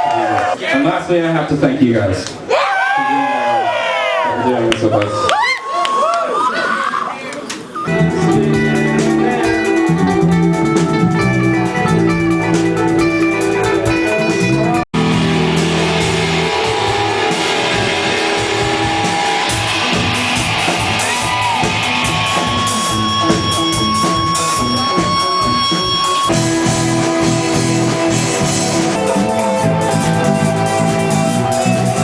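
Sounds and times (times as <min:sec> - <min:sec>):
live rock band playing: 0:07.7 - 0:32.0.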